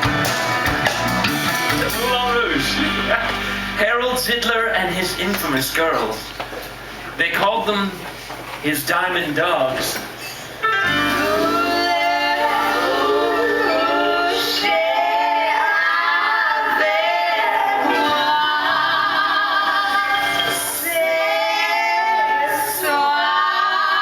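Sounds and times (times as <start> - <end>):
instrumental accompaniment: 0.0 - 4.0, 10.6 - 15.2
women singing show tune: 10.9 - 24.0.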